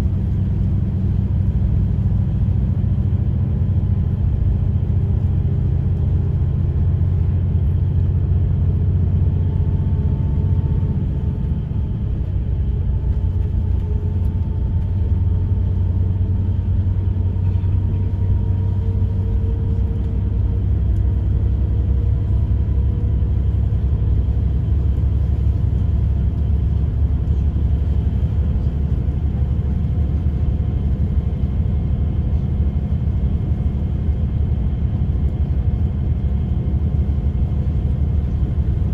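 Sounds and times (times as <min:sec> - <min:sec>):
bus engine and tyre rumble: 0:00.0 - 0:38.9.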